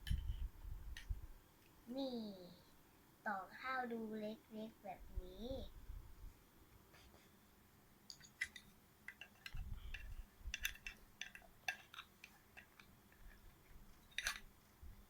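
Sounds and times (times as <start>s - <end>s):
plastic toy pieces clicking: 8.2s - 12.9s, 14.1s - 14.5s.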